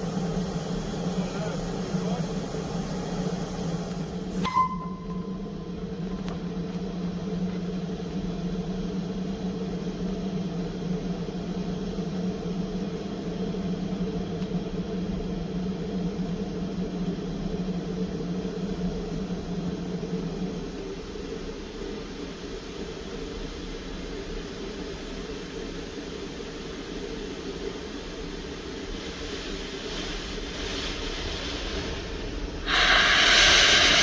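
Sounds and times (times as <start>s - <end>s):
locomotive engine humming: 0.0s - 6.8s, 32.6s - 34.0s
short ringing ping: 4.4s - 5.5s.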